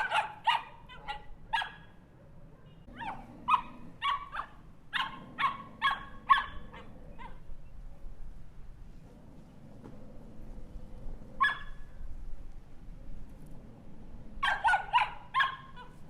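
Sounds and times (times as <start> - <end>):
small dog barking: 0.0 - 2.0, 2.9 - 7.5, 11.4 - 11.8, 14.4 - 16.0.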